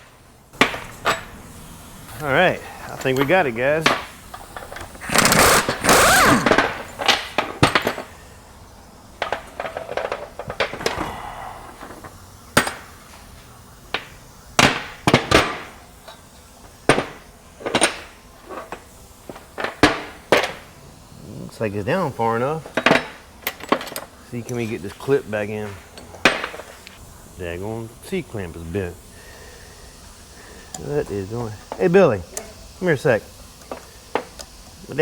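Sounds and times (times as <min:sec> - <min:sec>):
metal grinding and rattling: 0:00.0 - 0:14.0.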